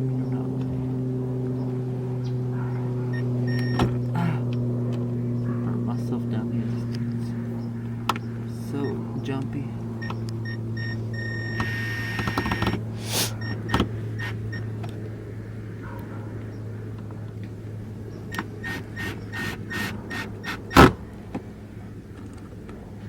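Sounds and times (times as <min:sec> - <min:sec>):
steady low hum: 0:00.0 - 0:23.0
cordless drill running: 0:10.8 - 0:14.6, 0:18.6 - 0:21.0.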